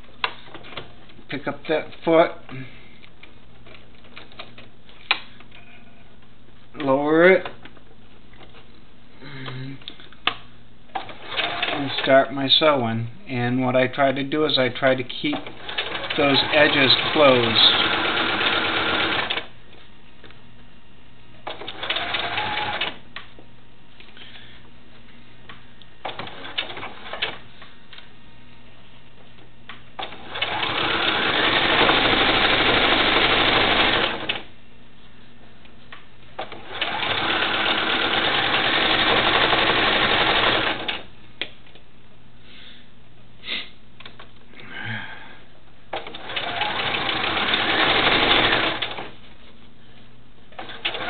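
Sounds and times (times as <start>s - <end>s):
electric sewing machine stitching: 11.0s - 12.1s, 15.4s - 19.5s, 21.5s - 23.0s, 30.0s - 34.4s, 36.4s - 41.0s, 46.0s - 49.1s, 50.6s - 51.0s.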